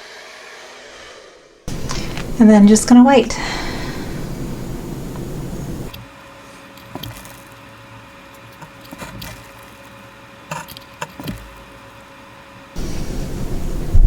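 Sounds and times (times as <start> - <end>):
light clicks and taps: 1.7 - 2.4
faint steady hum: 1.7 - 10.5, 11.2 - 14.0.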